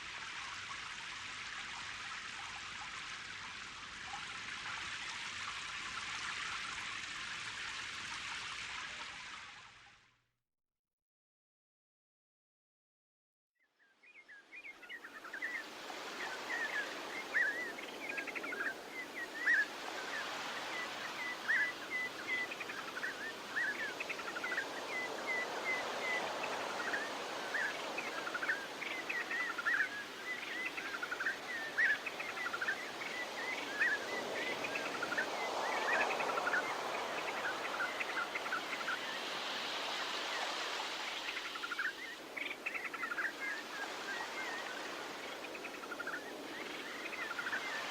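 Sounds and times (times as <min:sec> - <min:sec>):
small birds chirping: 0:14.0 - 0:47.9.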